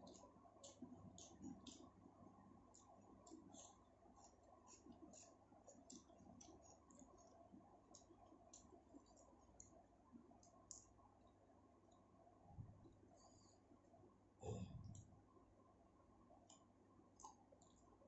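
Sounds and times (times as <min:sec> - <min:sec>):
person chewing food: 0:00.0 - 0:10.9, 0:16.4 - 0:18.0.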